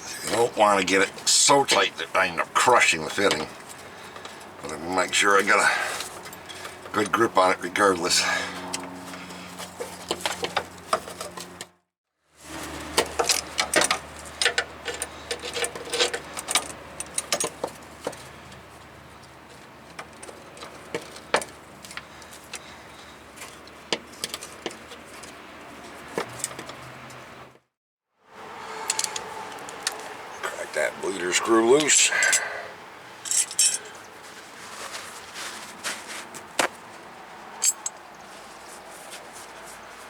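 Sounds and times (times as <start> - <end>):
wrench and metal parts clinking: 13.1 - 18.4, 28.8 - 29.3, 33.2 - 34.0, 37.6 - 38.0.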